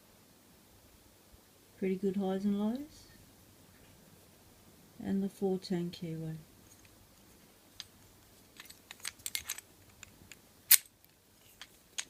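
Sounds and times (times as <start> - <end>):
key and padlock rattling: 8.6 - 9.6
sharp padlock click: 10.7 - 10.9.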